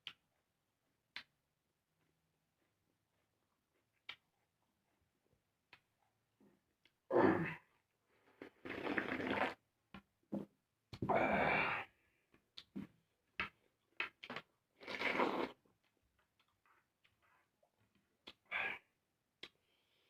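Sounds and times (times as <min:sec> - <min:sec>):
noisy slurps: 0:08.4 - 0:09.6, 0:14.8 - 0:15.6.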